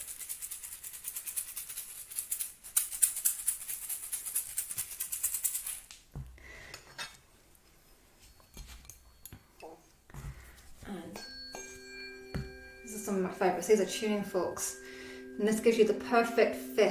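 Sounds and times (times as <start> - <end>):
egg shaker shaken rapidly: 0.0 - 5.9.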